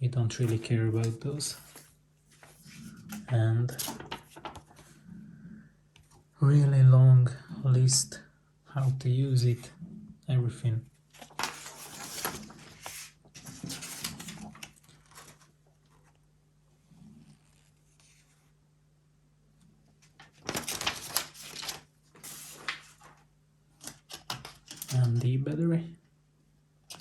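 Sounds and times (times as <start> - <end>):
packaging rustling and crinkling: 20.2 - 23.2.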